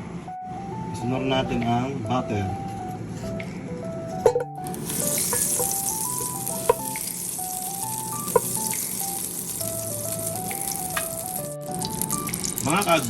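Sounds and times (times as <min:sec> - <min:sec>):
background music: 0:00.0 - 0:13.0
butter sizzling in a pan: 0:04.6 - 0:13.0.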